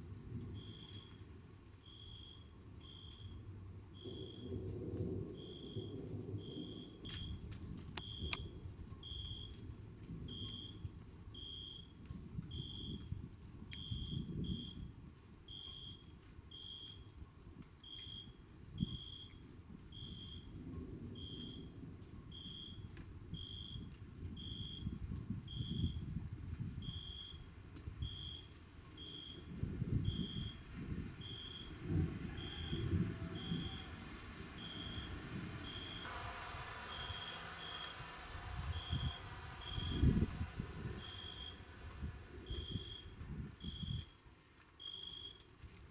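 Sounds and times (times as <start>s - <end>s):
sharp clicks: 7.9s - 8.5s
low rumbling background: 33.8s - 43.7s.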